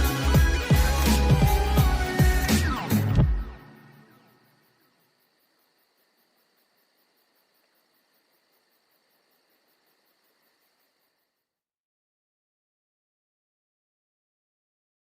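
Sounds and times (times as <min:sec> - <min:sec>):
faint steady hiss: 0:03.6 - 0:11.4.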